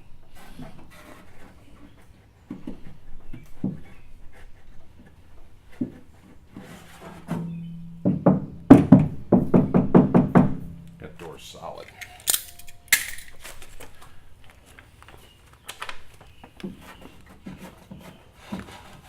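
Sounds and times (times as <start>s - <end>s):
light knocks and rubbing: 0.3s - 8.5s, 16.4s - 19.0s.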